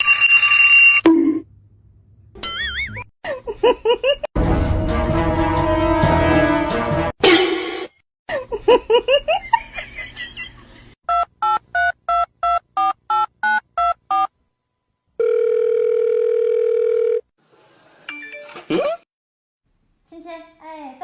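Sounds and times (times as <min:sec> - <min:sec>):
music: 0:04.4 - 0:07.1
call tone: 0:15.2 - 0:17.3.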